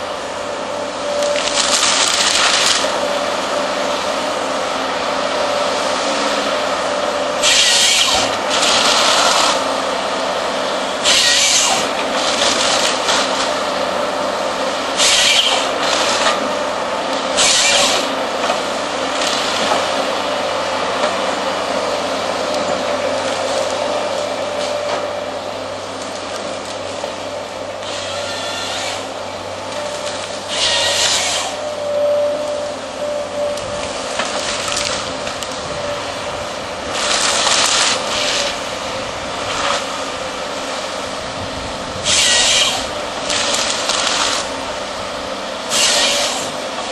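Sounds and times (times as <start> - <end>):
excavator engine and hydraulics: 0.0 - 46.9
harvester head harsh bursts: 7.4 - 9.6, 11.0 - 13.3, 15.0 - 16.3, 17.3 - 18.1, 30.4 - 31.6, 42.0 - 44.5, 45.7 - 46.6.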